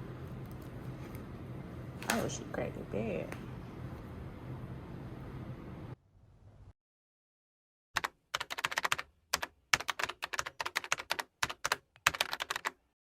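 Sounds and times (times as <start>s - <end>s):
keyboard typing clicks: 8.0s - 12.8s.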